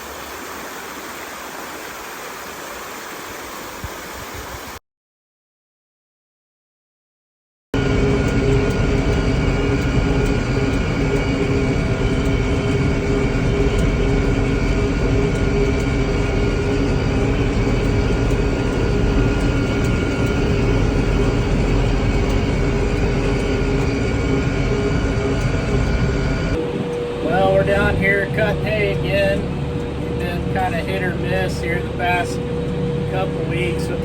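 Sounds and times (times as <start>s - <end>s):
tractor engine running under load: 7.8s - 34.0s.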